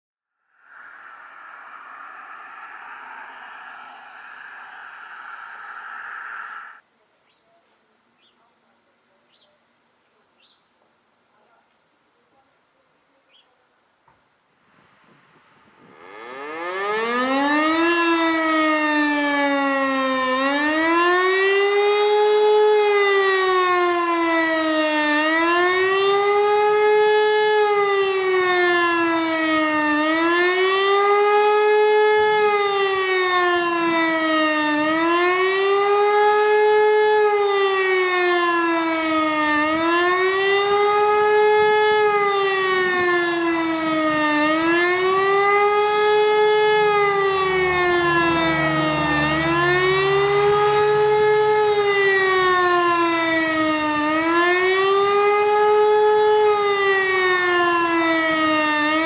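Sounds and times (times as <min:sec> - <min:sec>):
motor siren howling: 0:00.5 - 0:06.8, 0:16.0 - 0:19.8, 0:24.3 - 0:59.0.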